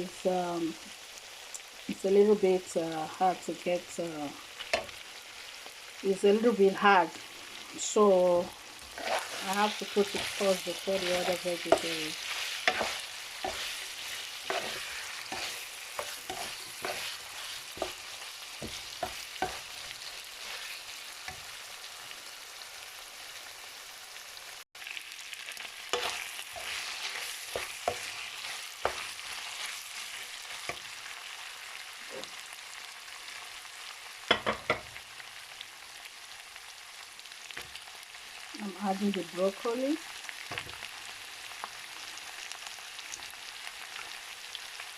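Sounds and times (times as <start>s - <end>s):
food sizzling in a wok: 0.0s - 44.9s
utensil scraping a pan: 8.8s - 21.4s, 25.9s - 30.8s.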